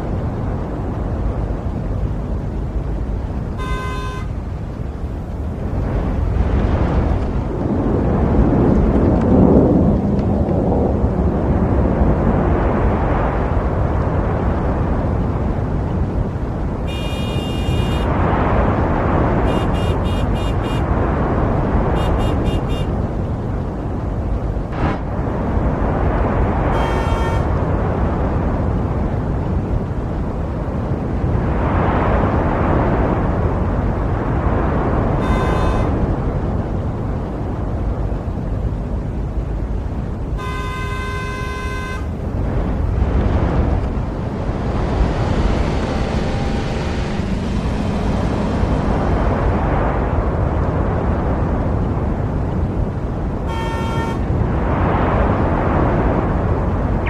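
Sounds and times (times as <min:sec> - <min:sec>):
passing vehicles rumble: 0:00.0 - 0:57.0
car horn honking: 0:03.6 - 0:04.4, 0:16.9 - 0:18.1, 0:19.5 - 0:20.9, 0:22.0 - 0:23.0, 0:26.7 - 0:27.5, 0:35.2 - 0:36.0, 0:40.4 - 0:42.1, 0:53.4 - 0:54.2.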